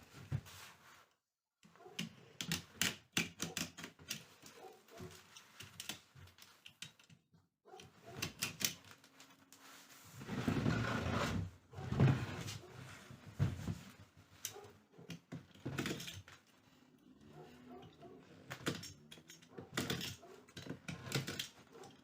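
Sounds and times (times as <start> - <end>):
rustling scrape: 9.2 - 14.2.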